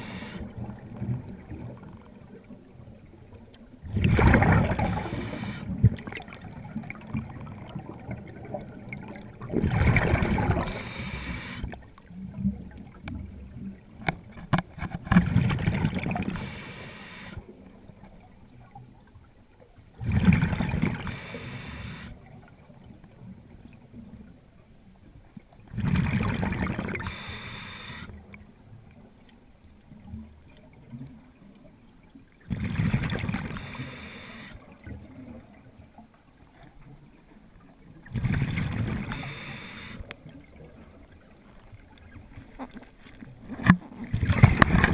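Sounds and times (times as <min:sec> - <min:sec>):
diver exhaling bubbles underwater: 0:03.9 - 0:11.7, 0:20.0 - 0:22.1, 0:25.7 - 0:28.1, 0:32.5 - 0:34.5, 0:44.1 - 0:44.9.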